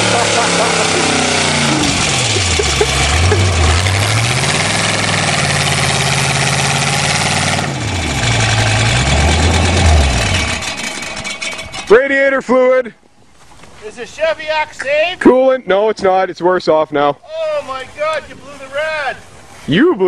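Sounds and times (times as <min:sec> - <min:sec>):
car engine driven hard: 0:00.0 - 0:11.9
heavy rushing noise: 0:00.0 - 0:11.9.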